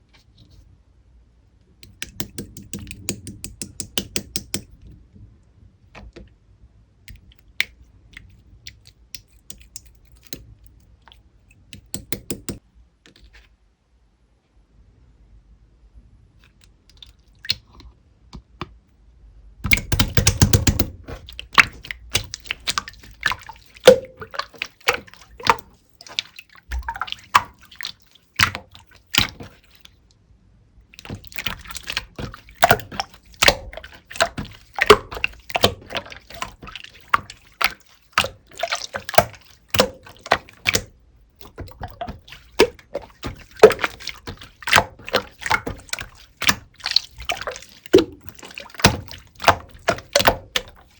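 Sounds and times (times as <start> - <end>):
slime squishing with wet clicks: 1.6 - 4.9, 7.0 - 13.6, 16.4 - 18.8, 19.6 - 50.9.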